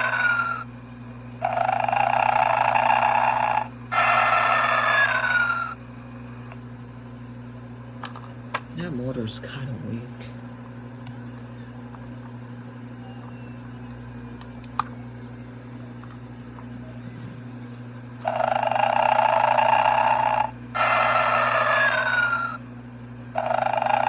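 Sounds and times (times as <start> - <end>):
recorded snoring: 0.0 - 0.7, 1.4 - 5.8, 18.2 - 22.6, 23.3 - 24.0
low motor hum: 0.0 - 24.0.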